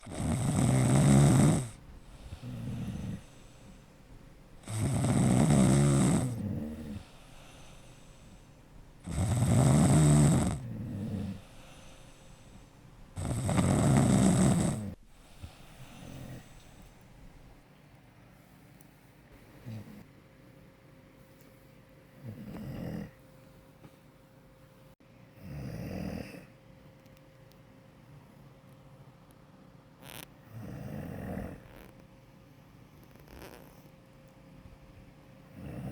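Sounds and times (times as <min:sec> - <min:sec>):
dog snoring: 0:00.0 - 0:17.6, 0:19.6 - 0:20.1, 0:22.2 - 0:23.2, 0:25.4 - 0:26.5, 0:30.0 - 0:31.9, 0:35.5 - 0:35.9.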